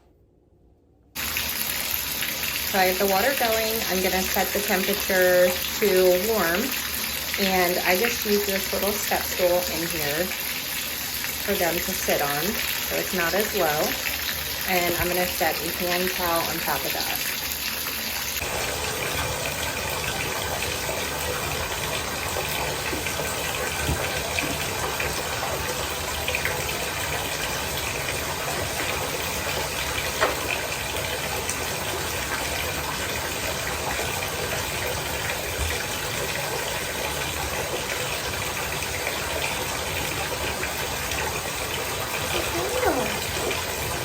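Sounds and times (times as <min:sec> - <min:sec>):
shower water running: 0:01.2 - 0:44.0.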